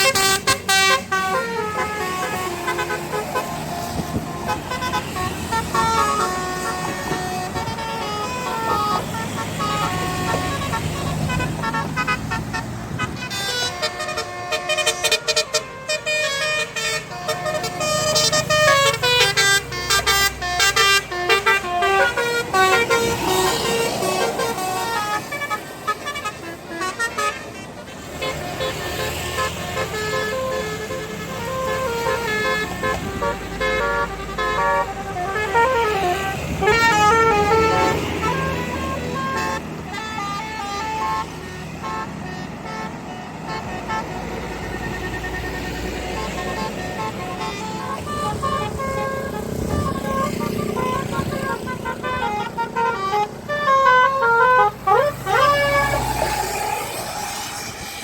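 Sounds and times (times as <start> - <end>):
bus engine running: 0.0 - 58.0
multi-tone bus horn tune: 0.0 - 58.0.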